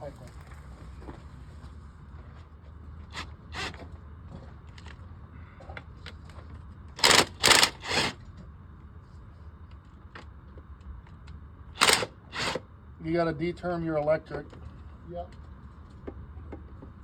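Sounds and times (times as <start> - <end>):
impact gun rattling bursts: 7.0 - 8.2, 11.8 - 12.6.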